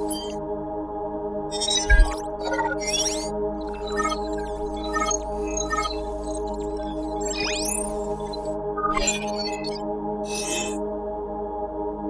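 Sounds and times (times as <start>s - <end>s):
faint high digital blips: 0.0s - 0.4s, 1.5s - 10.8s
sustained electronic drone: 0.0s - 0.4s, 1.6s - 10.8s
electronic sweep rising: 1.6s - 10.8s.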